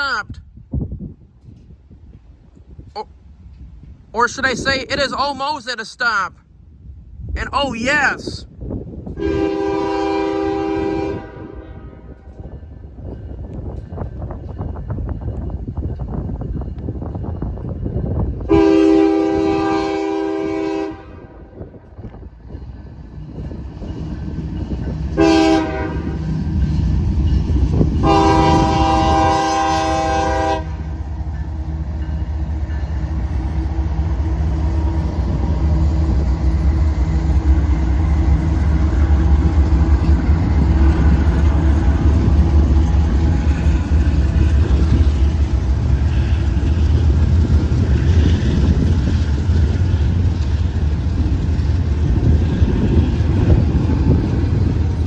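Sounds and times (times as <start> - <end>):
train rumble: 0.0 - 55.0
locomotive air horn blasts: 9.2 - 12.1, 18.5 - 21.4, 25.2 - 26.2, 28.0 - 30.9.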